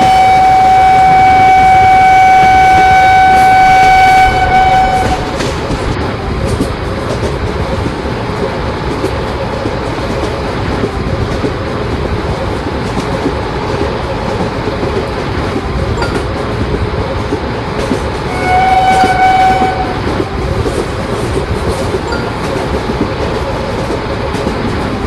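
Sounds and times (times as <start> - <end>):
train horn blast: 0.0 - 5.6, 18.3 - 20.2
train rumbling past: 0.0 - 25.0
wheels clattering on rails: 0.0 - 25.0.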